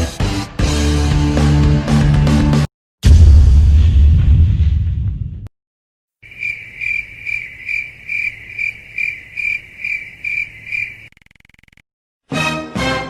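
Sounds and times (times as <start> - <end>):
crickets chirping: 6.2 - 11.8.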